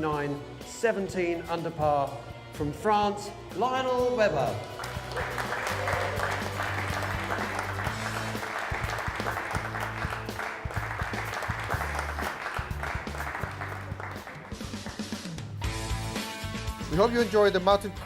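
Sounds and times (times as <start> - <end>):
background music with bass: 0.0 - 18.0
audience clapping: 4.5 - 15.6.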